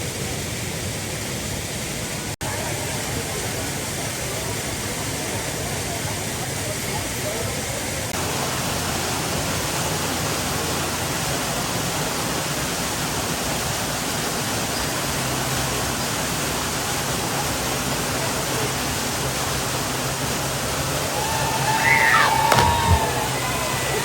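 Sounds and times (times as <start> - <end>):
waterfall rushing: 15.1 - 24.0.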